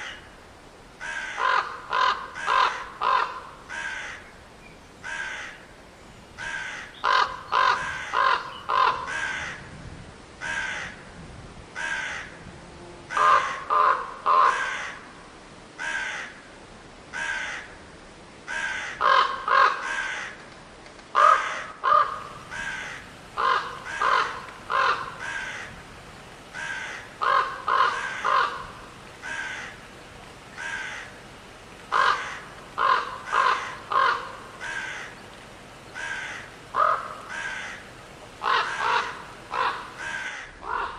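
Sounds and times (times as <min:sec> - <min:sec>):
crows cawing: 0:01.0 - 0:04.3, 0:05.0 - 0:05.7, 0:06.4 - 0:09.6, 0:10.4 - 0:11.0, 0:11.8 - 0:12.4, 0:13.1 - 0:15.0, 0:15.8 - 0:16.4, 0:17.1 - 0:17.8, 0:18.5 - 0:20.4, 0:21.2 - 0:25.8, 0:26.4 - 0:40.9.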